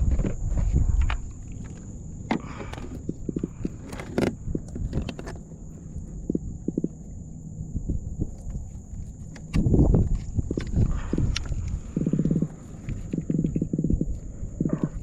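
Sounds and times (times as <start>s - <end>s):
low rumble of wind or water: 0.0s - 15.0s.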